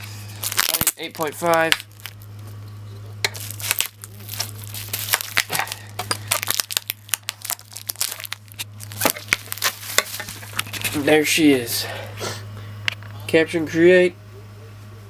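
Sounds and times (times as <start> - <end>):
plastic wrapping tearing and crinkling: 0.0 - 2.6, 3.2 - 11.1.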